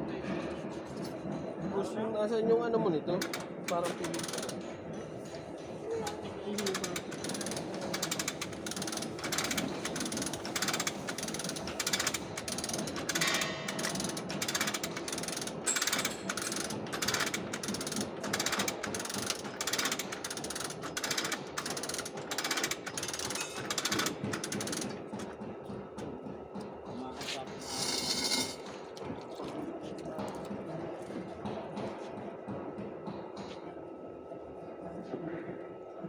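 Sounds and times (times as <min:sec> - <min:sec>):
hand ratchet clicking: 0:03.2 - 0:04.6, 0:06.6 - 0:24.9, 0:27.6 - 0:28.7.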